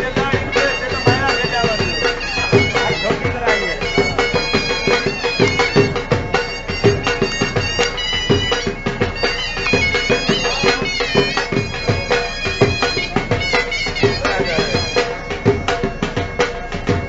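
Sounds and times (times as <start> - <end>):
bagpipes playing a melody: 0.0 - 17.0
drum beating: 0.0 - 17.0.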